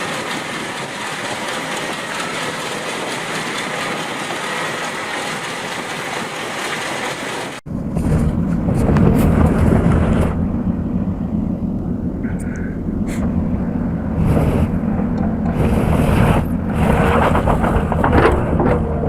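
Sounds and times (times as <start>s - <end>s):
hissy machinery noise: 0.0s - 18.8s
deep diesel engine rumble: 0.0s - 19.0s.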